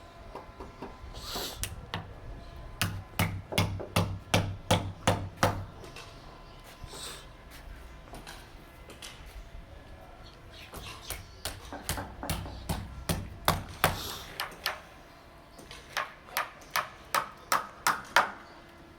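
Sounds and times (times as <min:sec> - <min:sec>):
hammer blows on formwork: 0:02.8 - 0:05.9, 0:11.1 - 0:14.8.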